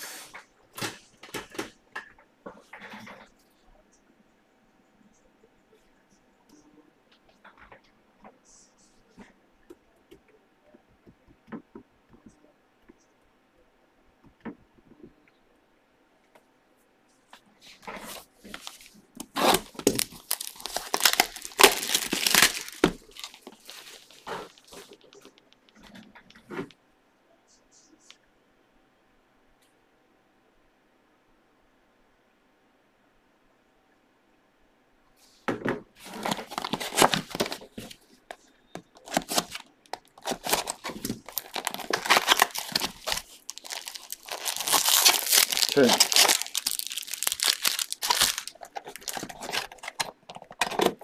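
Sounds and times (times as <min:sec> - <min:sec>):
plastic wrapping crinkling: 0:17.8 - 0:25.4, 0:36.0 - 0:51.0.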